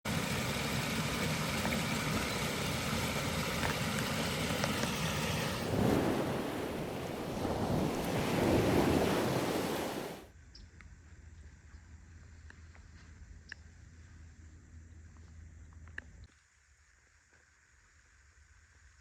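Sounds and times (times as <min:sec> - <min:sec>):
waterfall rushing: 0:04.8 - 0:10.2.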